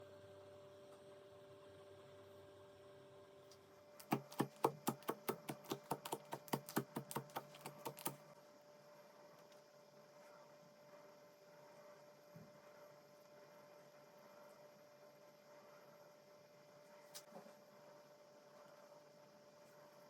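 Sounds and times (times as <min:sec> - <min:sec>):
slime clicking: 0:04.0 - 0:08.2.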